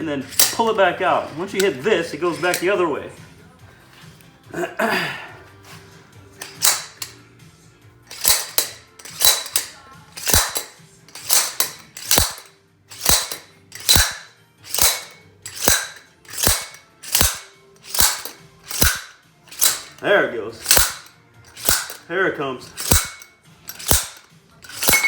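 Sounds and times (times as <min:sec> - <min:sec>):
slide hammer metallic clacks: 0:00.1 - 0:02.9, 0:06.4 - 0:07.3, 0:08.1 - 0:25.0.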